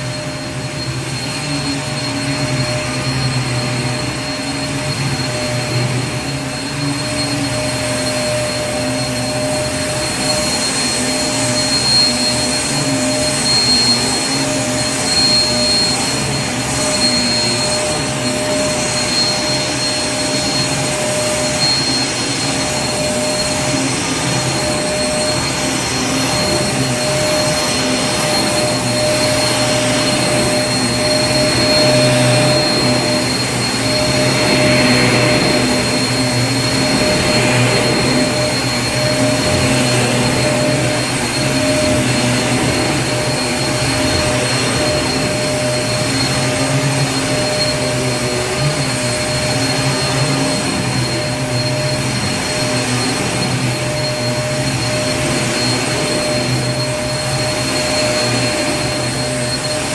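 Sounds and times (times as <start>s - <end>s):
vacuum cleaner motor running: 0.0s - 59.9s.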